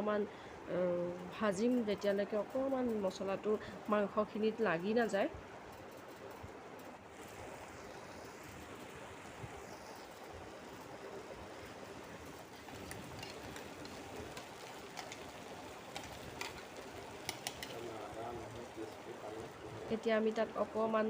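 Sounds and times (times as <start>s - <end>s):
sharp crackles of frying: 4.6s - 21.0s
curry sizzling in a pan: 12.4s - 21.0s.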